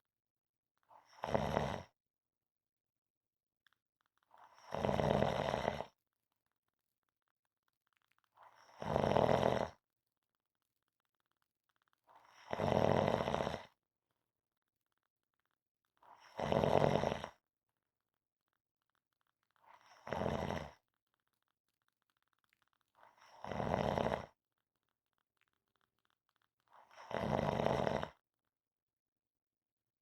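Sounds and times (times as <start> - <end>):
person snoring: 1.0 - 1.9, 4.4 - 6.0, 8.4 - 9.8, 12.1 - 13.8, 16.0 - 17.4, 19.7 - 20.8, 23.1 - 24.4, 26.8 - 28.2.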